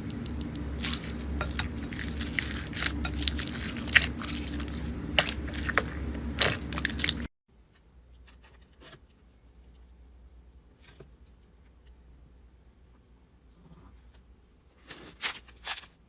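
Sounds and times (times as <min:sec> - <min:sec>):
slime squeezed crackling and popping: 0:00.0 - 0:07.3.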